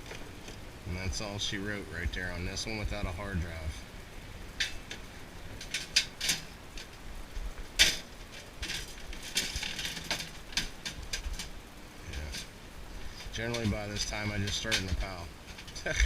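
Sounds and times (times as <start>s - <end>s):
computer scrap clattering: 13.2s - 16.0s.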